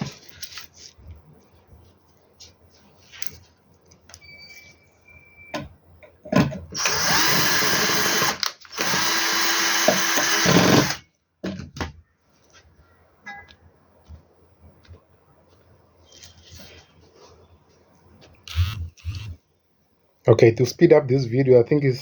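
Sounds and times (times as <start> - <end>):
power drill-driver running: 6.8 - 11.0, 18.5 - 19.4.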